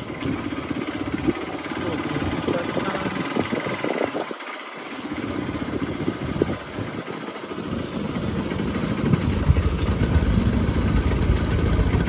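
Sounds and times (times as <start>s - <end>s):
motorcycle engine rumbling: 0.0s - 4.3s, 4.9s - 12.0s.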